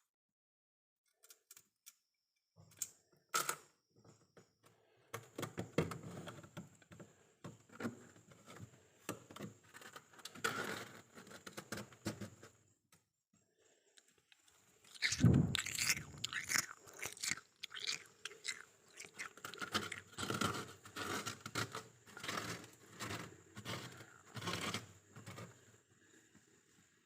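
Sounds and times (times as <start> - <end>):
freezer frost crackling: 14.8 - 24.8.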